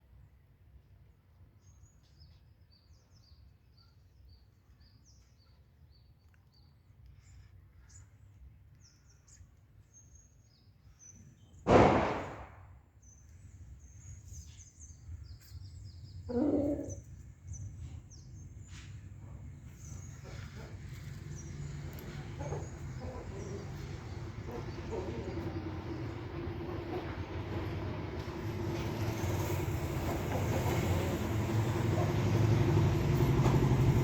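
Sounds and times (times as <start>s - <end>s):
loud sudden noise: 11.7s - 12.6s
small birds chirping: 13.0s - 34.0s.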